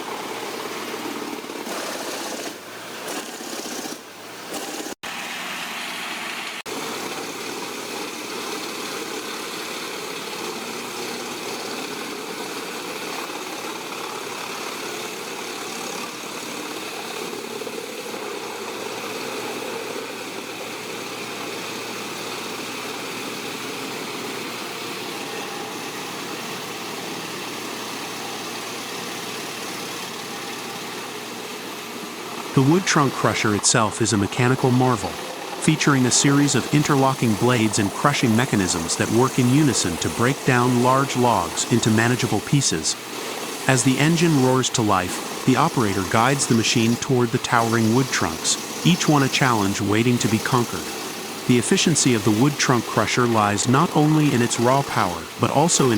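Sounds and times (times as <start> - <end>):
wood grinder diesel engine running: 27.9 - 55.9.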